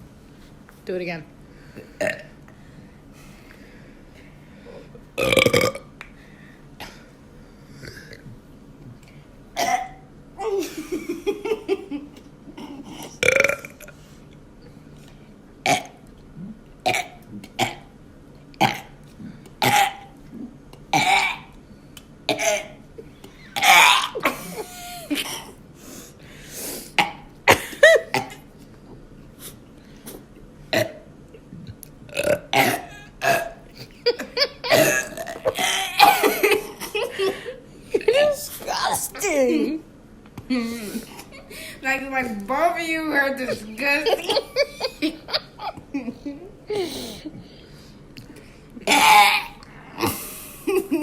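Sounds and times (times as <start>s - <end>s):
girl burping: 2.0s - 2.3s, 5.2s - 5.9s, 32.1s - 36.4s, 48.8s - 50.3s.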